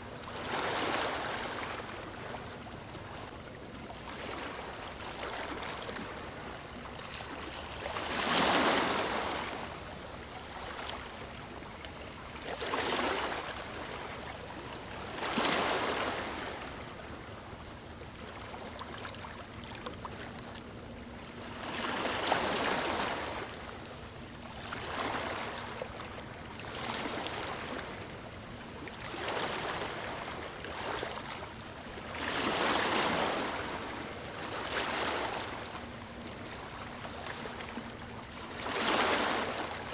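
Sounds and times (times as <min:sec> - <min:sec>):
ocean waves breaking on beach: 0:07.9 - 0:09.7, 0:32.1 - 0:39.9.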